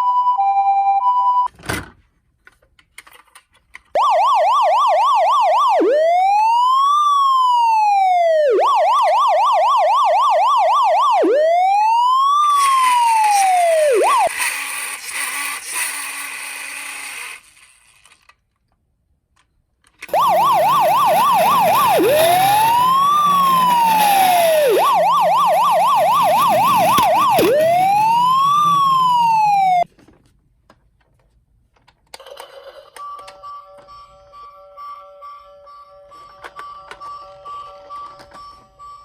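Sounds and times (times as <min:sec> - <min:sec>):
electronic police siren: 0:04.0 - 0:15.6, 0:20.1 - 0:29.9.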